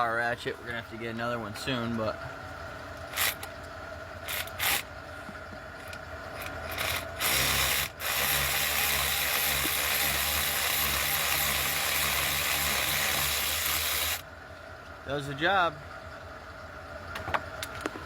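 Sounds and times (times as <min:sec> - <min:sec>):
power ratchet running: 0:03.1 - 0:03.5, 0:04.2 - 0:04.9, 0:06.3 - 0:14.2
sharp ratchet clicks: 0:03.1 - 0:03.6, 0:04.2 - 0:04.9, 0:06.4 - 0:14.2.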